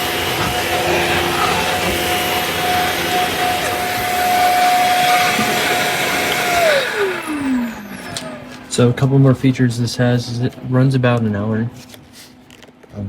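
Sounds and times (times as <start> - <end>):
wet dry vac whining: 0.0 - 10.4.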